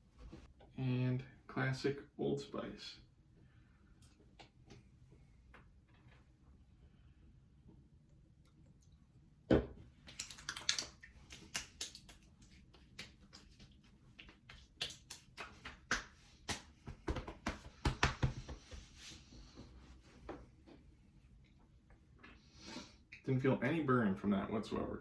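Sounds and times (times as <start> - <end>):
hands slapping and patting face: 10.1 - 19.1.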